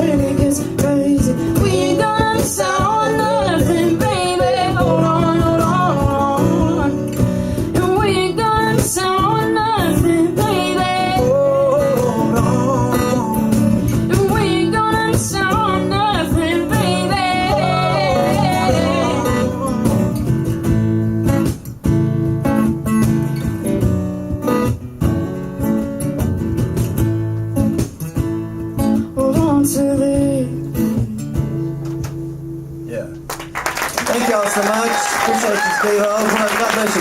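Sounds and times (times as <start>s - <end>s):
person singing: 0.0s - 20.2s
acoustic guitar: 0.0s - 34.0s.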